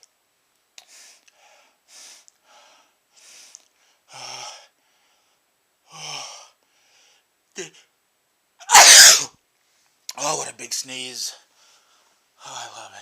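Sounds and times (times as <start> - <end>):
man breathing unevenly: 0.8 - 7.3, 11.5 - 12.2.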